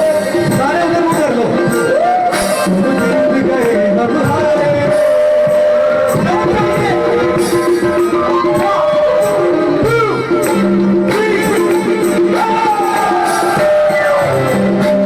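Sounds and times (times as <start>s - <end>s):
band accompaniment with percussion: 0.0s - 15.0s.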